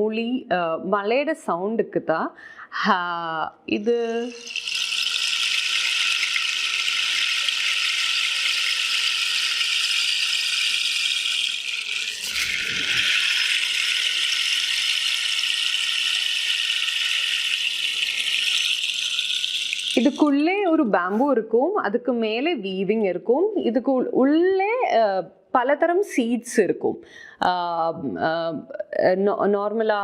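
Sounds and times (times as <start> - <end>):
rainstick rattling: 4.2 - 20.4.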